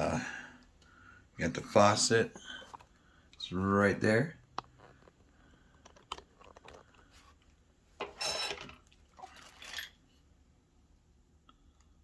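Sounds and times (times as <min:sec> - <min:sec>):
rustling and clattering of parts: 0:04.6 - 0:10.2.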